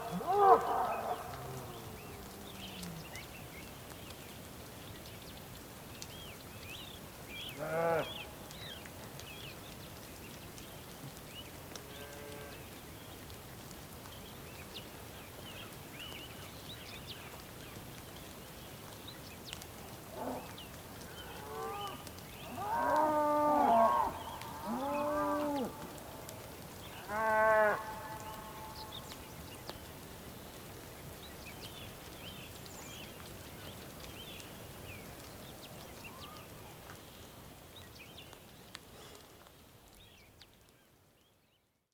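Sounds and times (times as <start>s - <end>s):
rain hissing: 0.0s - 40.8s
bulls mooing: 0.1s - 3.0s, 21.2s - 26.0s, 27.0s - 28.8s.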